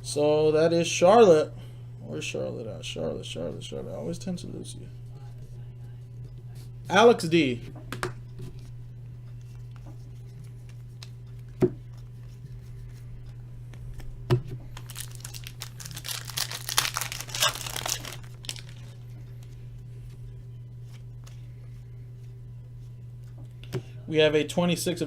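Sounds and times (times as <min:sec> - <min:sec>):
foil wrapper tearing and crinkling: 0:14.7 - 0:19.0.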